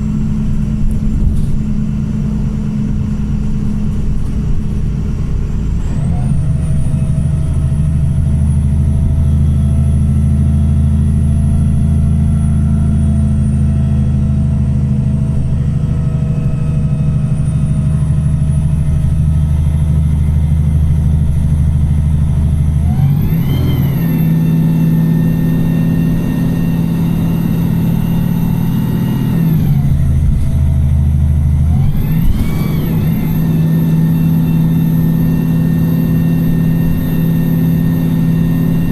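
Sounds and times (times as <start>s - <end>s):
bus engine drone and whine: 0.0s - 38.9s.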